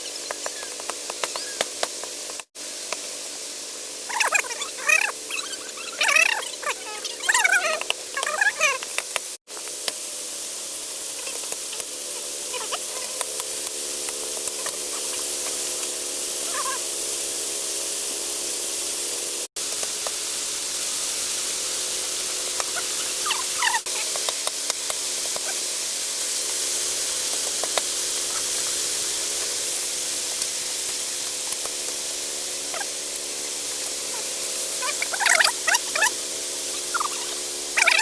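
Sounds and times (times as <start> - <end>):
food frying in hot oil: 0.0 - 38.0.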